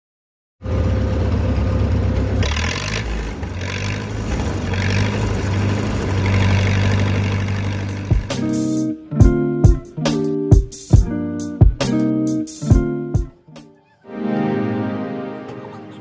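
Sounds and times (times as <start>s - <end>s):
engine humming: 0.6s - 9.9s.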